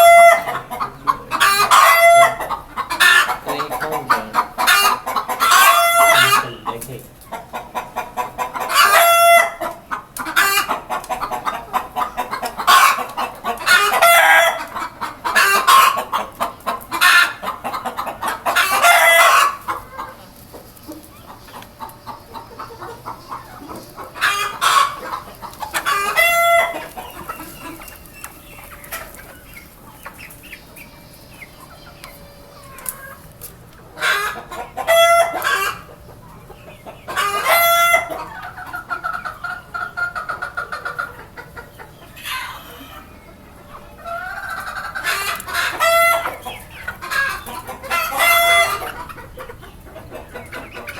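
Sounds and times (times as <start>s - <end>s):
rooster crowing: 0.0s - 0.6s
chickens clucking and squawking: 0.0s - 50.9s.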